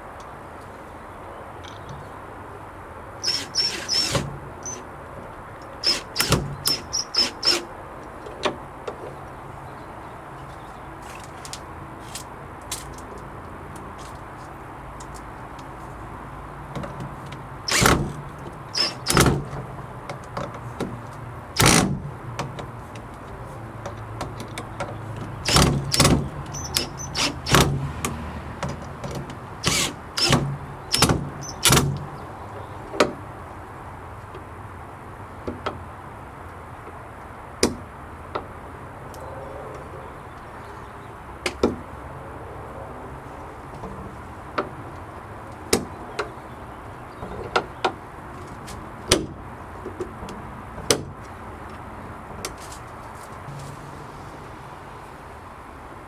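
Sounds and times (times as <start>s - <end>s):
metal latch and wooden gate knocks: 5.8s - 7.7s, 16.7s - 22.7s, 23.8s - 32.2s.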